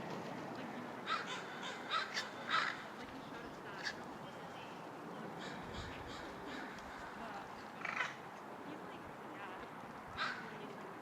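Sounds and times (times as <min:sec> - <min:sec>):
crow calling: 0:01.0 - 0:03.0, 0:05.4 - 0:08.2, 0:10.2 - 0:10.5.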